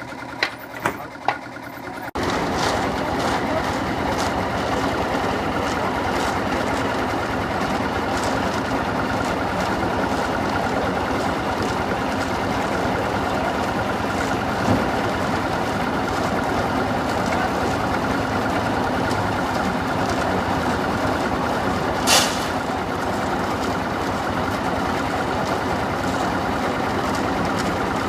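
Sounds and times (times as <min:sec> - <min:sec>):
heavy engine running: 0:00.0 - 0:28.0.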